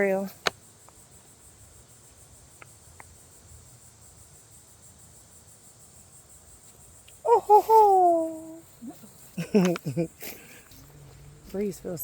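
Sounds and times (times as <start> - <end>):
crickets trilling: 0.0 - 12.0
woman exclaiming: 7.3 - 9.0.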